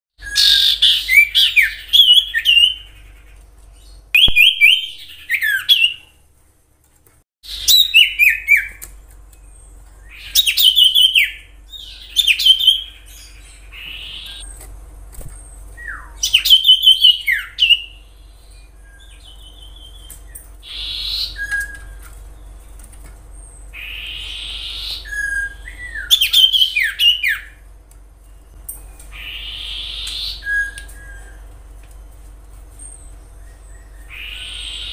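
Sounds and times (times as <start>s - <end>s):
bird singing whistled notes: 0.2s - 3.0s, 3.8s - 6.1s, 7.5s - 8.8s, 15.8s - 22.6s, 23.8s - 27.6s, 29.2s - 31.4s, 32.8s - 34.9s
harsh raspy bird notes: 10.1s - 14.6s, 15.8s - 21.8s, 29.1s - 30.8s, 33.7s - 34.9s.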